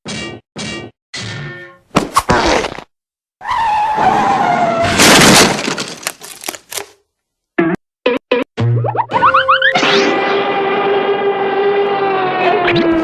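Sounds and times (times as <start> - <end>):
skidding screech: 3.4 - 5.4, 9.6 - 13.0
crash of shattering: 4.8 - 6.7.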